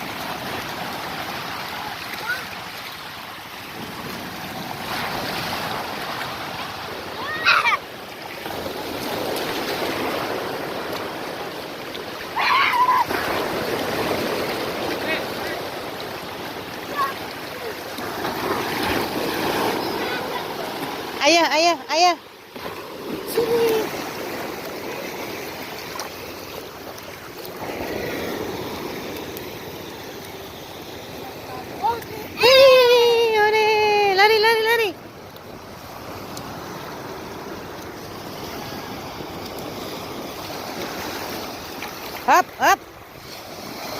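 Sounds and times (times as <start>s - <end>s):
surf washing on shore: 0.0s - 43.9s
high-pitched voice crying out: 7.2s - 7.8s, 12.4s - 13.1s, 32.4s - 33.4s.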